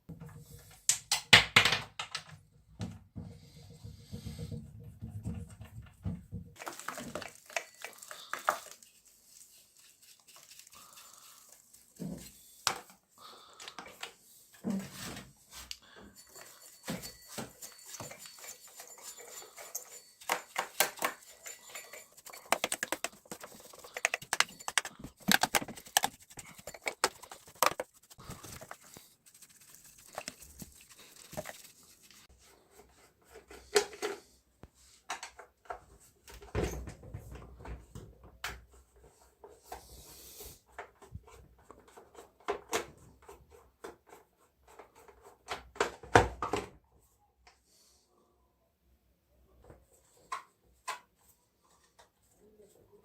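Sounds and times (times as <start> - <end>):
clicks and scraping on chainsaw parts: 16.0 - 29.2.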